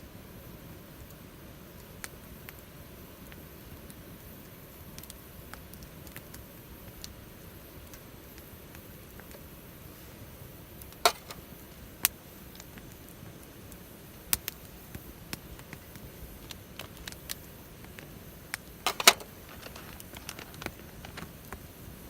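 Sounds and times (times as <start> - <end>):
wood fire crackling and popping: 0.0 - 22.0.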